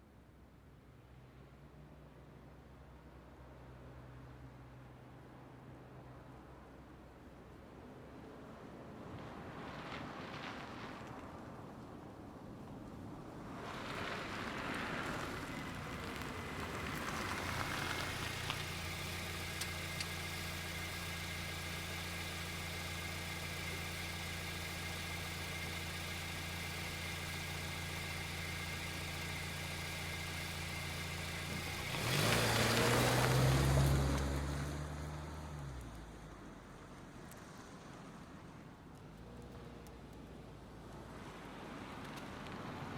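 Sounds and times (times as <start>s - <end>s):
road noise: 1.0s - 42.9s
car accelerating: 13.5s - 36.0s
car engine idling: 14.2s - 34.6s.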